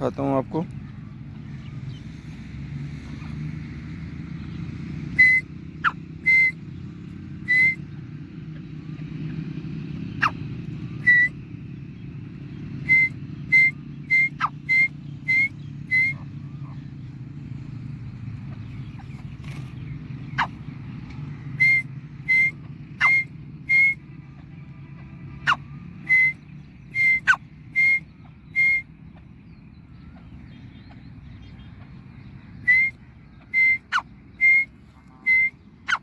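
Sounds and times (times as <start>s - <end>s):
high whistled notes: 5.2s - 5.4s, 6.3s - 6.6s, 7.5s - 7.8s, 12.9s - 16.2s, 21.6s - 24.0s, 25.5s - 26.4s, 28.6s - 28.8s, 32.7s - 33.0s.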